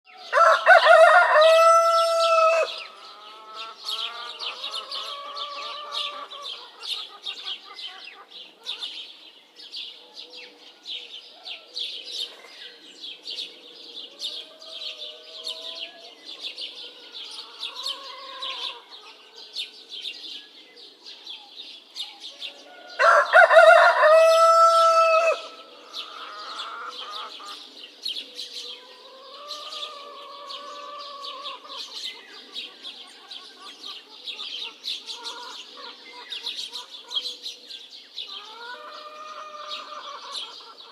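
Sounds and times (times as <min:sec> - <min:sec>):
small birds chirping: 0:00.0 - 0:40.9
rooster crowing: 0:00.2 - 0:03.6, 0:22.5 - 0:27.0
hens clucking: 0:00.4 - 0:08.9, 0:23.0 - 0:27.8, 0:38.4 - 0:40.9.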